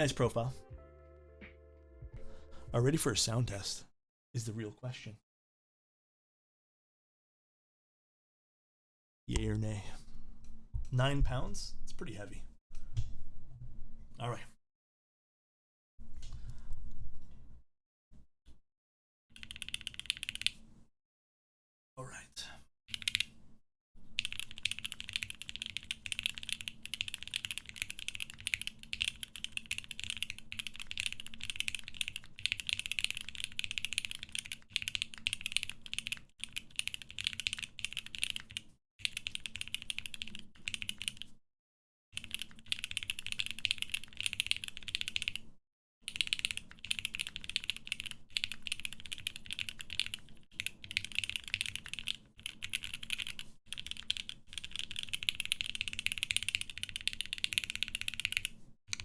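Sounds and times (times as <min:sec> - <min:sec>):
fast typing on mechanical keyboard: 0:19.4 - 0:20.6, 0:22.9 - 0:23.3, 0:24.2 - 0:41.4, 0:42.2 - 0:45.4, 0:46.0 - 0:59.0.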